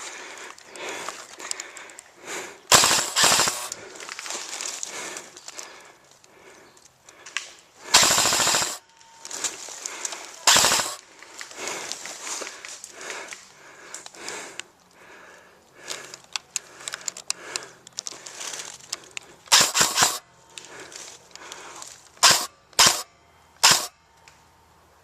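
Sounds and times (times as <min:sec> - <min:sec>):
airsoft guns firing: 0:02.7 - 0:03.8, 0:07.9 - 0:08.9, 0:10.4 - 0:11.0, 0:19.5 - 0:20.2, 0:22.2 - 0:23.9.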